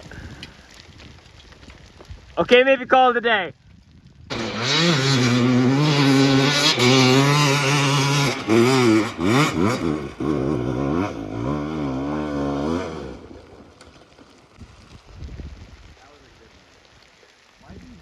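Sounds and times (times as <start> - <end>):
motorbike engine revving: 4.3 - 14.0.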